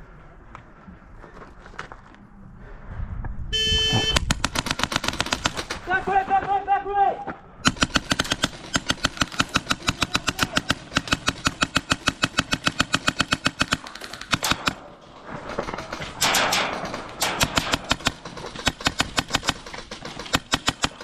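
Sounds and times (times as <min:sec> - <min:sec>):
airsoft guns firing: 0:04.0 - 0:06.1, 0:07.6 - 0:21.0.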